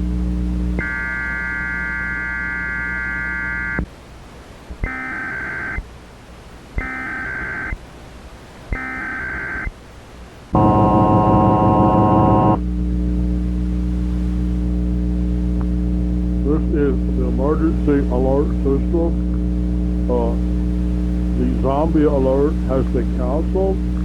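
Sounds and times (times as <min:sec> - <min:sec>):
steady electronic tone with hum: 0:00.0 - 0:04.0, 0:04.6 - 0:05.9, 0:06.6 - 0:08.0, 0:08.6 - 0:09.8, 0:10.4 - 0:24.0
data header bursts: 0:04.8 - 0:05.8, 0:06.8 - 0:07.8, 0:08.7 - 0:09.7, 0:10.6 - 0:12.6
two-tone attention signal: 0:04.8 - 0:05.8, 0:06.8 - 0:07.8, 0:08.7 - 0:09.7, 0:10.6 - 0:12.6.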